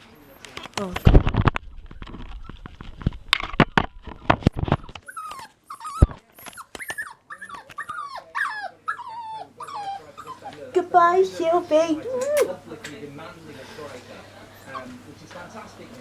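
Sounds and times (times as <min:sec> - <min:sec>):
puppy whimpering: 0:03.8 - 0:12.6.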